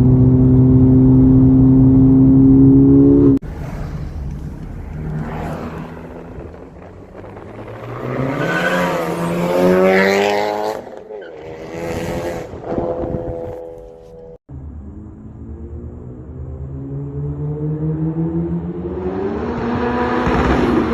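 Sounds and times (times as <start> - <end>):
car engine accelerating: 0.0 - 20.9.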